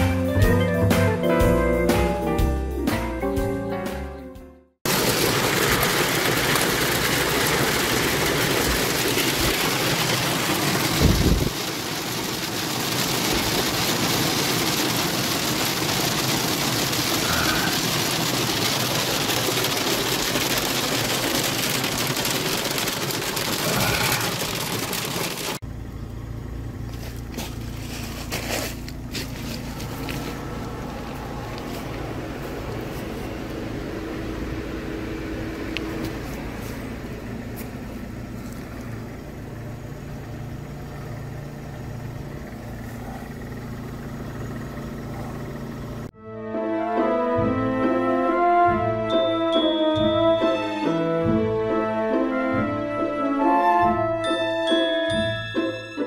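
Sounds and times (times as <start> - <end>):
heavy hail pelting: 4.9 - 25.6.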